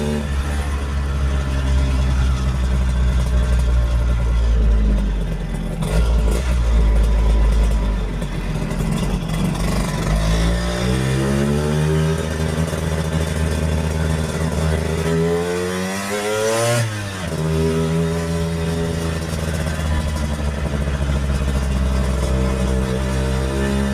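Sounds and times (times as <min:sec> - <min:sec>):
scooter engine accelerating: 0:00.0 - 0:23.9.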